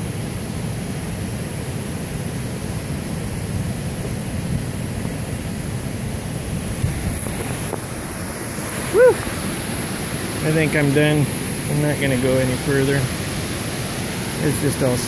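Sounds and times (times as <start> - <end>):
running water rushing: 0.0 - 15.0.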